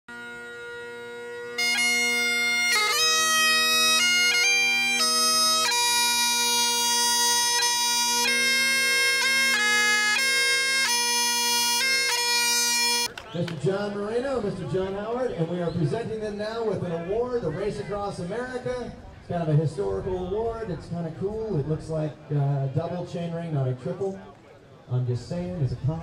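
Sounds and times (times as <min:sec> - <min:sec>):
bagpipes playing a tune: 0:00.1 - 0:13.2.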